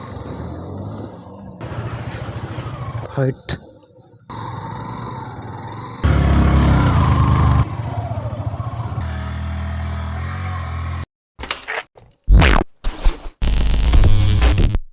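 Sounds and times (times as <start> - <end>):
motorcycle engine running: 1.6 - 3.1, 6.0 - 11.0.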